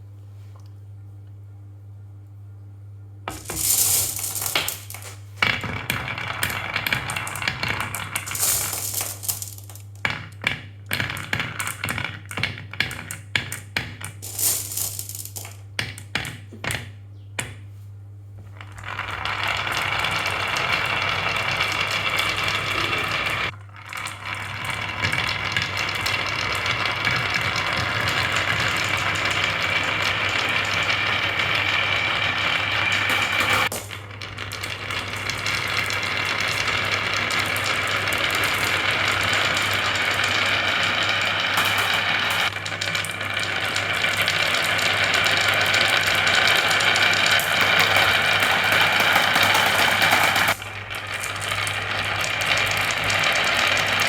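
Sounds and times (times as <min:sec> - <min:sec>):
marbles clicking on toy track: 0:03.3 - 0:16.8, 0:18.6 - 0:54.0
marbles rolling whir: 0:03.3 - 0:16.9, 0:18.6 - 0:54.0.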